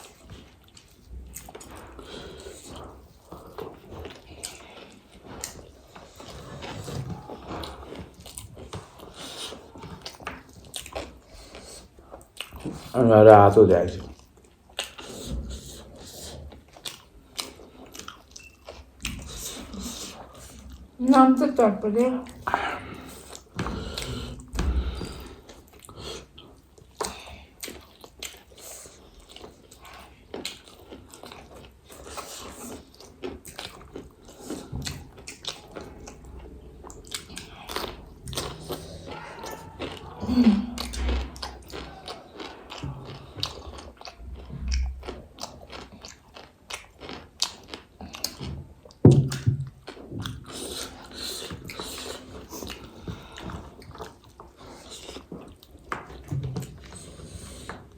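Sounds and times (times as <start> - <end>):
crunchy chewing and biting: 22.6 - 57.9.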